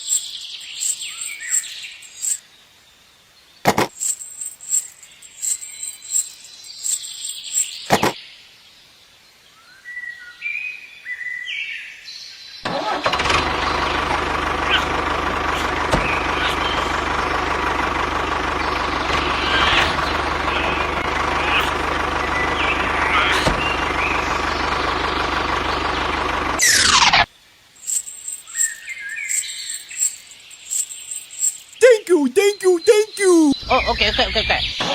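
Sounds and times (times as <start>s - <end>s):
small motor running: 13.4s - 24.0s.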